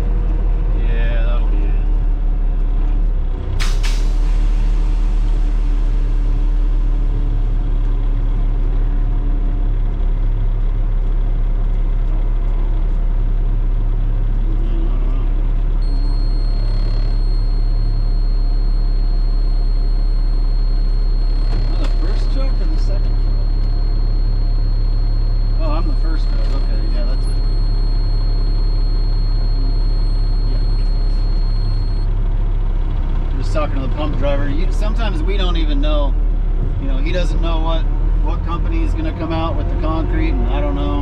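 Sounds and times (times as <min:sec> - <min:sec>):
diesel truck engine running: 0:00.0 - 0:41.0
air brakes hissing: 0:03.6 - 0:06.0.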